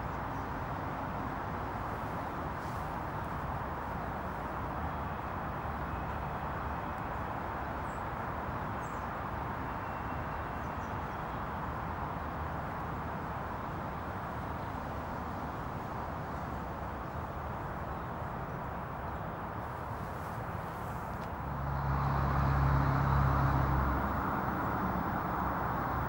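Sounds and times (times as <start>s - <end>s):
constant hiss: 19.4s - 26.0s
low rumble: 21.2s - 26.0s.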